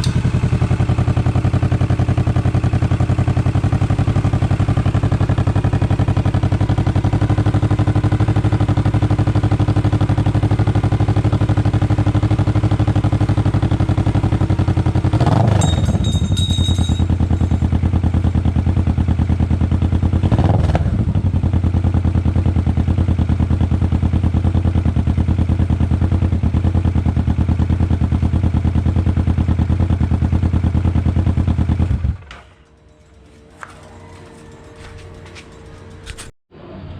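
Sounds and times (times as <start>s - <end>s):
motorcycle engine running: 0.0s - 36.3s.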